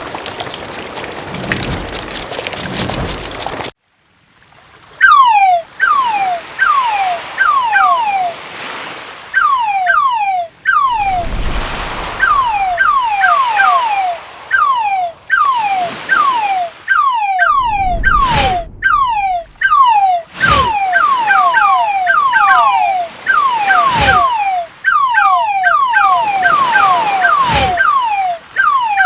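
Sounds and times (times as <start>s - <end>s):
sharp swish: 1.3s - 3.6s, 10.9s - 14.6s, 17.4s - 21.4s, 23.7s - 24.4s, 26.5s - 27.9s
ocean waves: 4.3s - 29.0s
whistling chirps falling in pitch: 5.0s - 8.5s, 9.3s - 29.0s.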